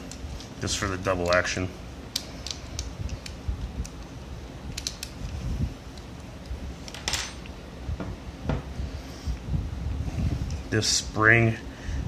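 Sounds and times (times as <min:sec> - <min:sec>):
small metal parts clicking: 0:04.7 - 0:05.2.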